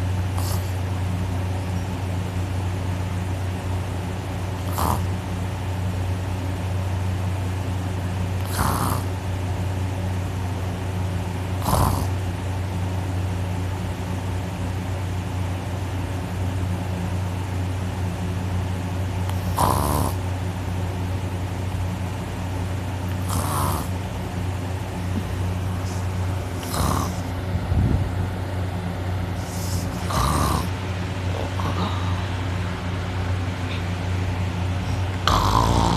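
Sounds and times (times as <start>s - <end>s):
harsh rasping snorts: 0.3s - 0.9s, 4.6s - 5.1s, 8.4s - 9.1s, 11.6s - 12.2s, 19.3s - 20.2s, 23.1s - 24.0s, 25.8s - 27.4s, 29.3s - 32.3s, 34.8s - 35.9s
steady low drone: 23.9s - 35.9s.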